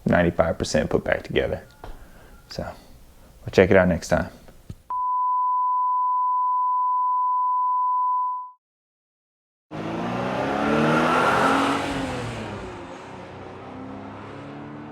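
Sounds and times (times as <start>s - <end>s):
high electronic beep: 4.9s - 8.6s
car engine revving: 9.7s - 14.9s.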